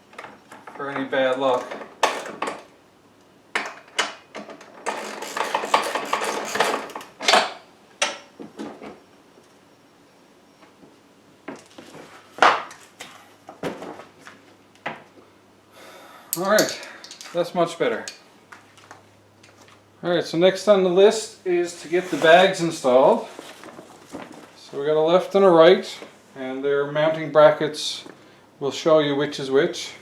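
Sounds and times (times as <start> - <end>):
rustling and rattling: 21.8 - 24.6.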